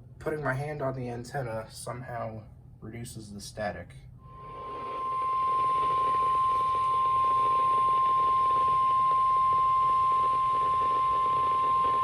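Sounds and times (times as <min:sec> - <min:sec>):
steady high alarm beep: 0:04.3 - 0:12.0.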